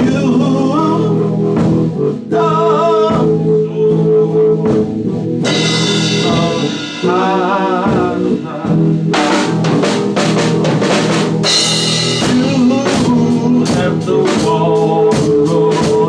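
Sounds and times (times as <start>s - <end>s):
drum kit beat: 0.0s - 16.0s
cymbal crash: 5.5s - 10.6s, 11.2s - 12.6s.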